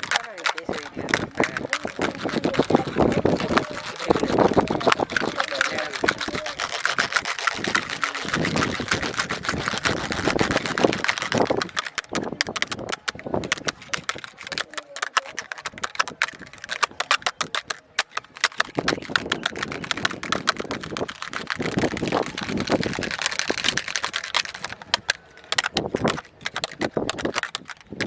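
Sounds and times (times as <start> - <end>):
rough scratching: 0.0 - 28.0
fingers tapping on plastic mould: 8.6 - 21.1, 23.7 - 27.8.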